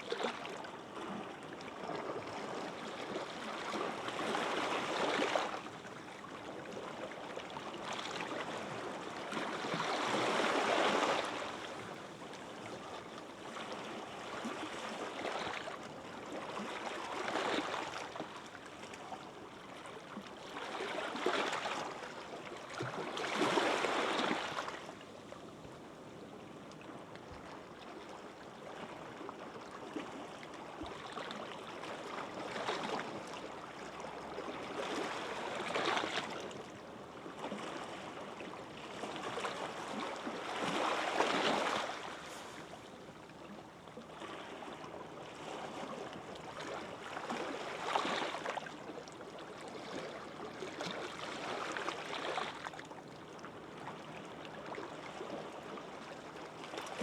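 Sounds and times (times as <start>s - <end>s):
gentle waves on sandy beach: 37.4s - 43.0s.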